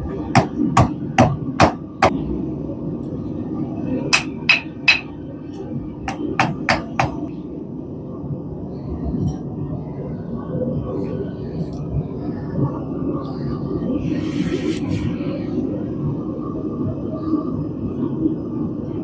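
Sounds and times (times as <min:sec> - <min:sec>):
low background rumble: 0:00.0 - 0:19.0
hammer striking steel on anvil: 0:04.1 - 0:05.1, 0:06.1 - 0:07.2.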